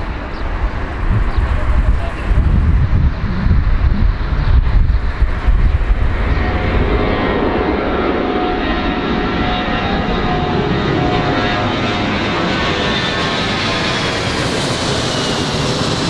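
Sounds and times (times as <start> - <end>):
airplane engines running: 0.0 - 16.0.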